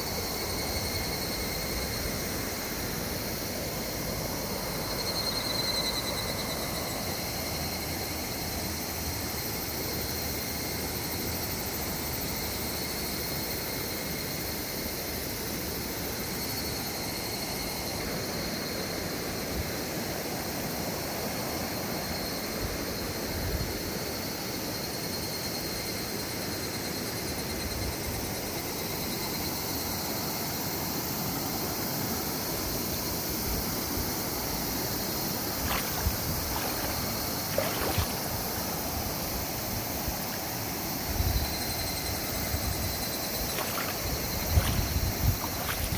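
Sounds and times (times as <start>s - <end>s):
river water rushing over rocks: 34.5s - 41.0s, 42.4s - 45.9s
high-pitched insect buzz: 34.8s - 45.9s.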